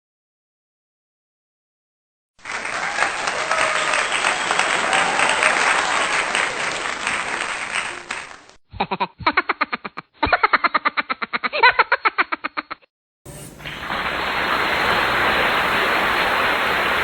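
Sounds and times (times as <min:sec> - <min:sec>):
steady hiss: 0:13.3 - 0:17.0.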